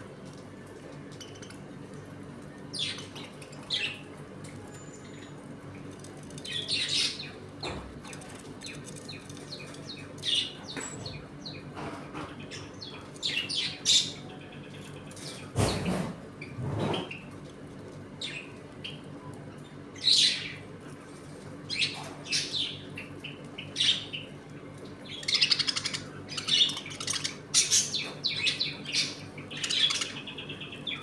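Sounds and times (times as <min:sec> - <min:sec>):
budgerigars chirping: 0:25.1 - 0:31.0.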